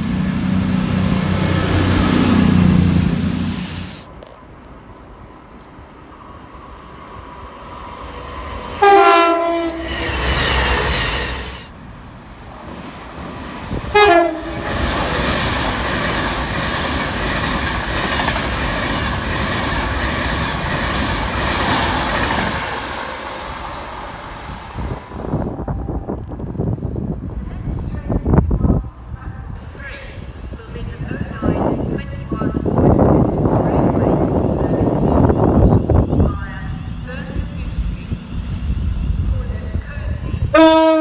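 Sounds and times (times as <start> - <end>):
train wheel and rail rush: 0.0 - 41.0
two-tone train horn blasts: 8.8 - 10.1, 13.9 - 14.8, 40.4 - 41.0.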